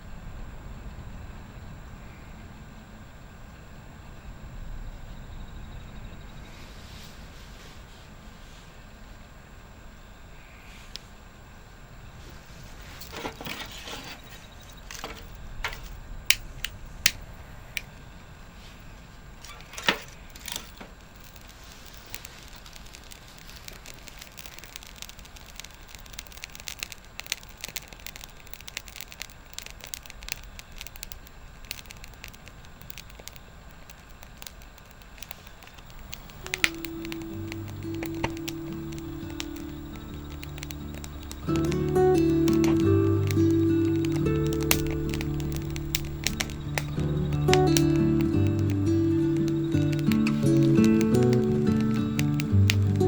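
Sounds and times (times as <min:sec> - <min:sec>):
wood fire crackling: 0:12.1 - 0:53.0
sharp pops of fire: 0:12.2 - 0:53.0.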